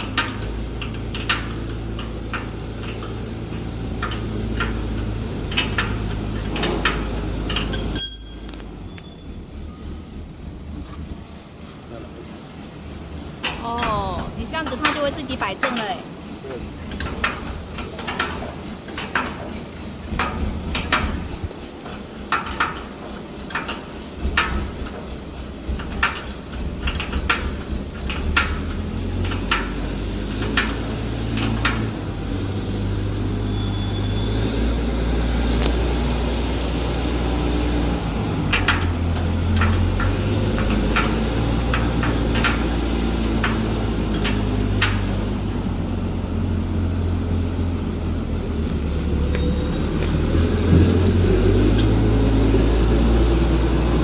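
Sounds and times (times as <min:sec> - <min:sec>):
light metallic clinks and taps: 0:05.5 - 0:09.1.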